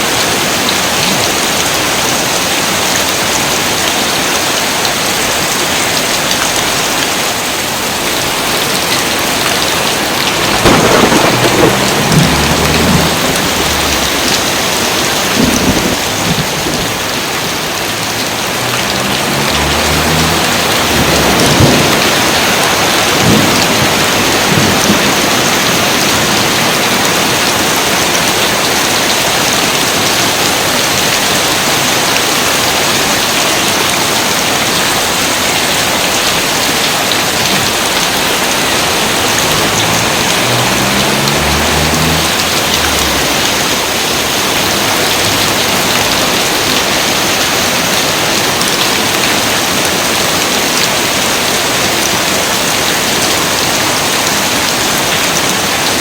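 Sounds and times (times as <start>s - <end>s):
steady rain falling: 0.0s - 56.0s
thunder rumbling: 8.4s - 26.7s, 37.9s - 47.0s.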